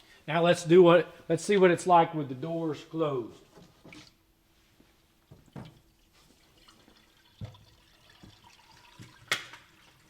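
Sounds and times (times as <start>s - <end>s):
water dripping and trickling: 5.4s - 10.0s.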